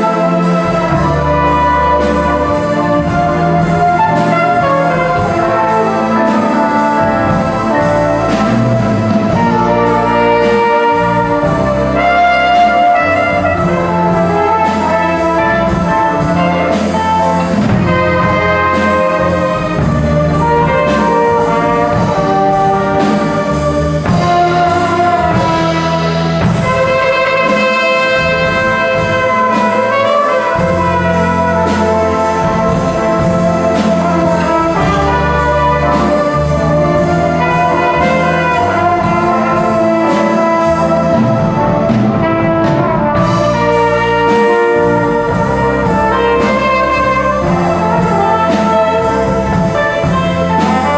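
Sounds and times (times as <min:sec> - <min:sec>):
small jazz band playing: 0:00.0 - 0:50.9
steady cymbal beat: 0:00.0 - 0:50.9.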